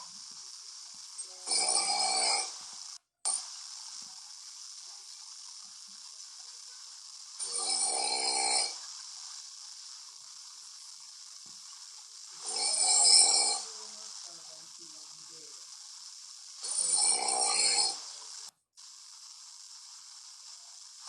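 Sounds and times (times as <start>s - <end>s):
faint steady hiss: 0.0s - 21.0s
man snoring: 1.4s - 2.6s, 7.4s - 8.8s, 12.4s - 13.6s, 16.6s - 18.0s.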